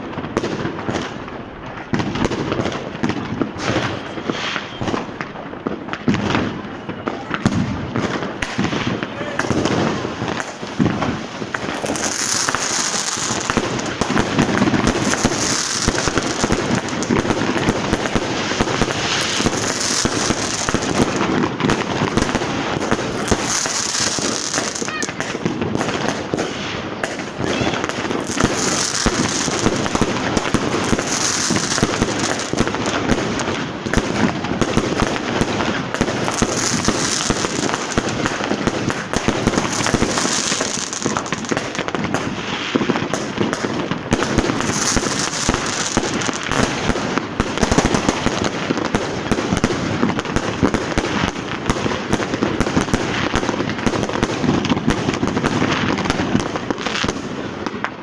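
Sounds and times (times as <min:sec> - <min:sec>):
firecracker bangs and crackling: 0:00.0 - 0:58.0.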